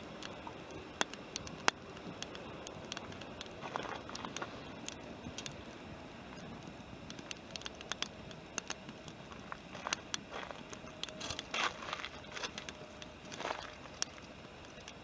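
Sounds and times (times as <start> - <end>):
campfire crackling and popping: 0.0 - 15.0
fire hissing flare-ups: 0.0 - 15.0.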